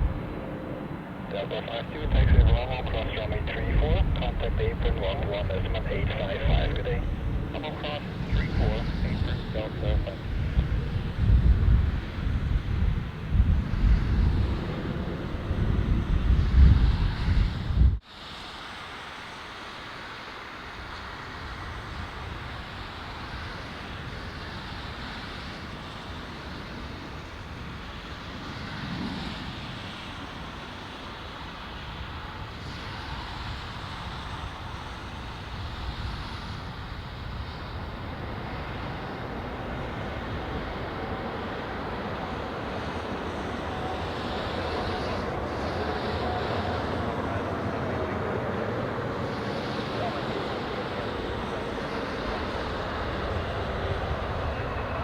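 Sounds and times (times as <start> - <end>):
distant jet noise: 0.0 - 55.0
faint jet engine whine: 0.0 - 55.0
wind rushing: 2.0 - 18.0.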